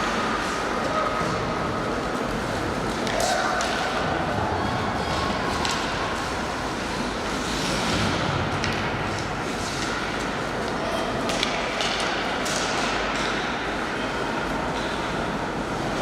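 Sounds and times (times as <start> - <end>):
murmur of voices: 0.0 - 7.5, 9.4 - 16.0
hockey sticks and puck clicking: 2.9 - 4.1, 5.5 - 6.3, 8.5 - 13.6.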